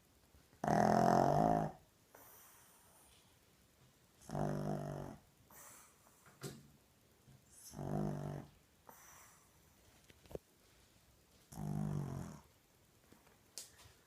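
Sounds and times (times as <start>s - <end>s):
dog snoring loudly: 0.6s - 2.4s, 4.2s - 5.2s, 7.6s - 9.1s, 11.5s - 12.5s
faint breathy sounds: 2.1s - 3.5s, 4.2s - 6.4s, 7.4s - 10.1s.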